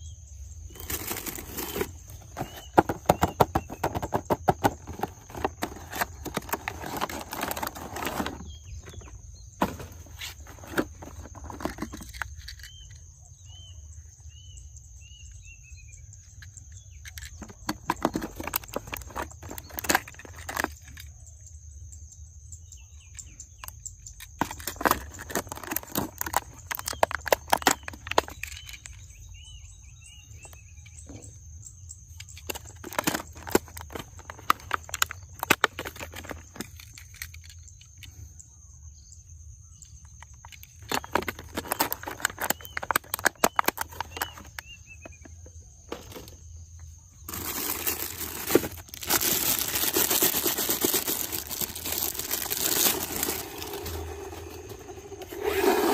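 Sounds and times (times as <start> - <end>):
bird chirps: 0.0 - 24.9, 25.5 - 35.4, 36.4 - 55.9
toy cars rattling and clicking: 0.8 - 9.1, 9.7 - 13.1, 16.2 - 21.2, 23.1 - 29.3, 32.1 - 38.2, 40.0 - 44.7, 47.3 - 55.9.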